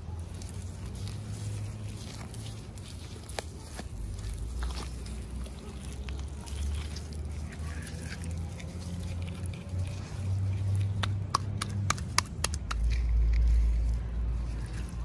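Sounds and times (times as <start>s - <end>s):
low rumble of handling noise: 0.0s - 15.0s
sharp clicks and taps of toys: 10.9s - 13.4s.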